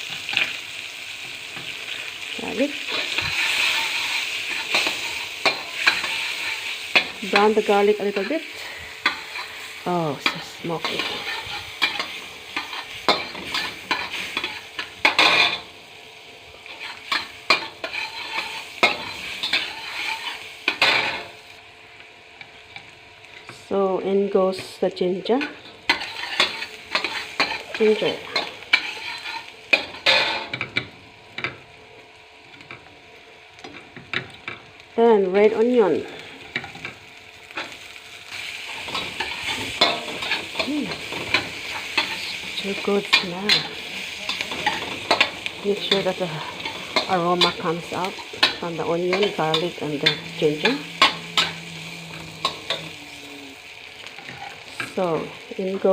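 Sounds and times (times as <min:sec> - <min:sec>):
garlic sizzling in butter: 0:00.0 - 0:55.9
utensil scraping against wok: 0:01.5 - 0:15.7, 0:16.6 - 0:21.4, 0:24.5 - 0:30.8, 0:36.0 - 0:55.0.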